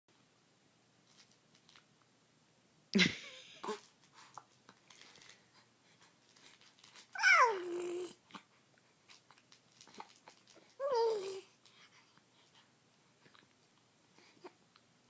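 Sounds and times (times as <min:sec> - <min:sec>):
baby cooing: 0:07.2 - 0:08.2, 0:10.8 - 0:11.6.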